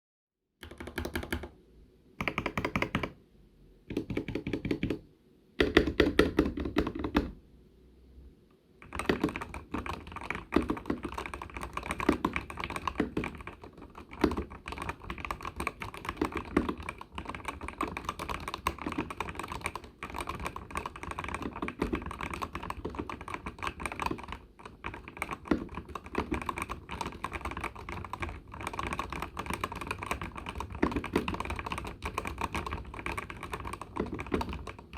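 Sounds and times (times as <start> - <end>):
mechanical keyboard typing: 0.6 - 1.6, 2.2 - 3.2, 3.9 - 5.0, 5.6 - 7.4, 8.8 - 34.9.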